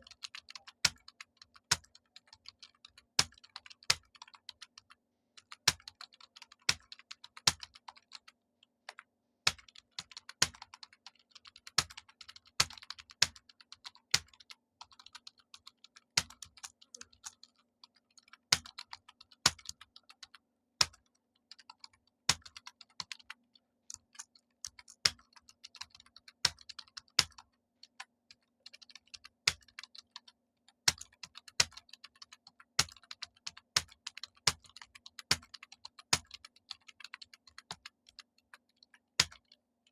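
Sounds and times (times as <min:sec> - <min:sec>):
keyboard typing: 0:00.0 - 0:39.9.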